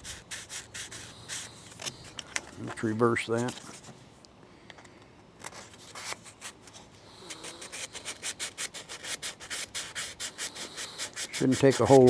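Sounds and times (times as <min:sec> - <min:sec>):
hand sanding with sandpaper: 0:00.0 - 0:01.8, 0:07.3 - 0:12.0.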